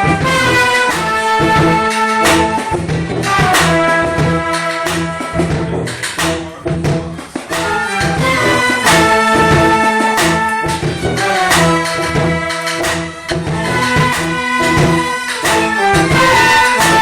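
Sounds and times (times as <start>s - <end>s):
low bass line: 0.0s - 12.5s
jazz band playing: 0.0s - 17.0s
saxophone and horns chords: 0.0s - 17.0s
sharp drum hits: 0.0s - 17.0s.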